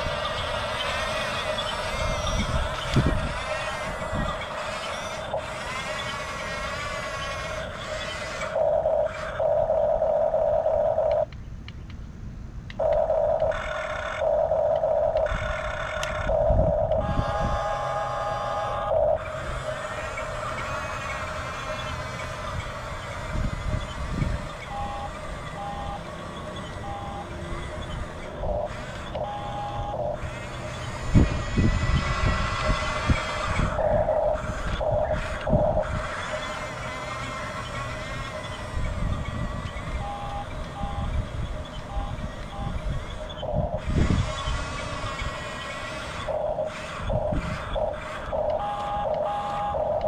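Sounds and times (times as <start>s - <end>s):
electric motors whining: 0.0s - 11.4s, 12.7s - 50.0s
loud steady whine: 0.0s - 50.0s
short electronic beeps: 23.7s - 33.0s, 39.2s - 44.4s, 46.4s - 50.0s.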